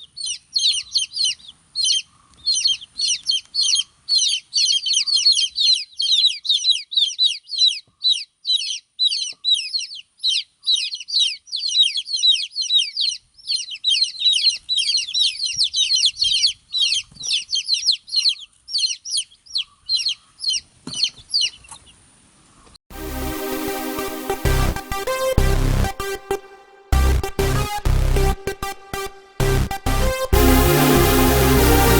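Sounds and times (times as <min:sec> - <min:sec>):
baby chicks peeping: 0:00.0 - 0:22.0.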